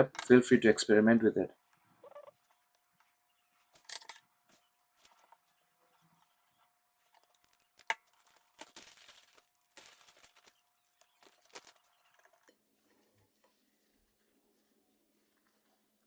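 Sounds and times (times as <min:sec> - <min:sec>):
wrapping crinkling and tearing: 0:07.0 - 0:12.5
wrapping material snapping: 0:07.1 - 0:12.4.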